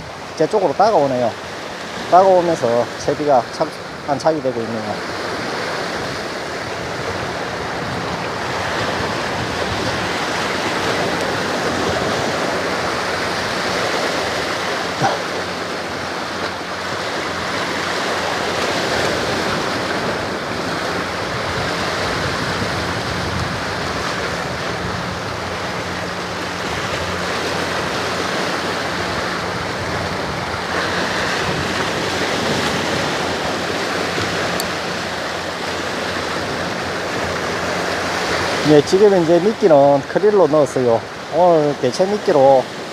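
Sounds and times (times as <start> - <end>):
surf washing against rocks: 0.0 - 42.9.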